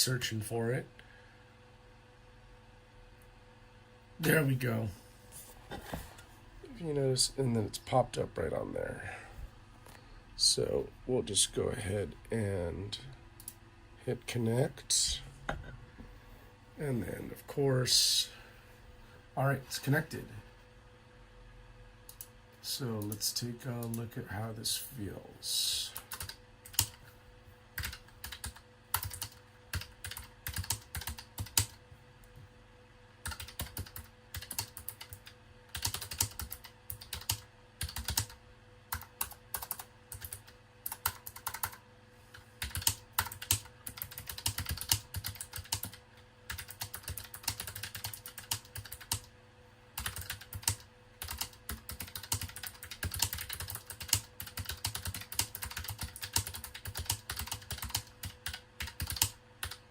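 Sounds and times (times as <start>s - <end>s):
clicky mechanical keyboard typing: 26.0s - 27.0s, 27.8s - 31.8s, 33.2s - 41.8s, 42.6s - 49.3s, 50.0s - 59.8s.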